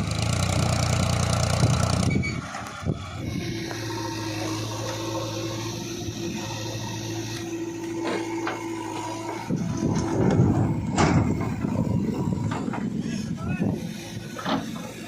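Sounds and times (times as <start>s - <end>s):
heavy diesel machinery running: 0.0s - 15.0s
knocks and clatter: 8.0s - 13.0s.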